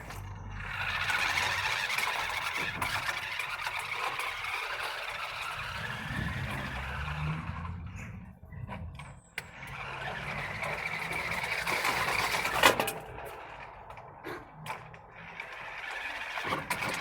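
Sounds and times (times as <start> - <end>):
remote-control car motor whirring: 0.1 - 8.2, 9.4 - 12.7, 14.7 - 17.0.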